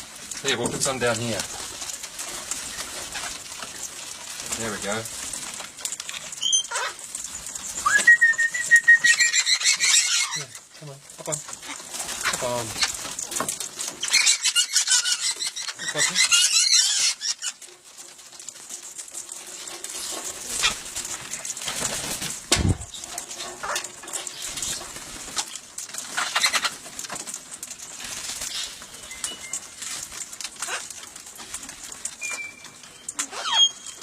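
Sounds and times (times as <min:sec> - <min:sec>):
sharp clicks of birds feeding: 0:00.0 - 0:34.0
wings flapping: 0:00.0 - 0:34.0
parrots squawking: 0:06.4 - 0:07.0, 0:07.8 - 0:10.6, 0:14.0 - 0:17.6, 0:26.1 - 0:26.8, 0:30.6 - 0:31.0, 0:33.2 - 0:34.0.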